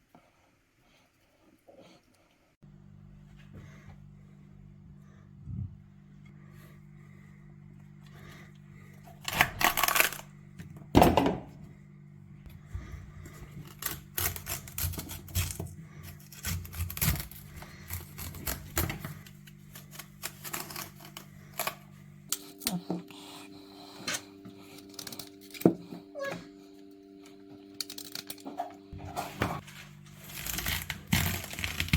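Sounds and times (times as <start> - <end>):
knife crunching through fennel: 9.1 - 10.3, 13.5 - 21.8, 30.2 - 31.9.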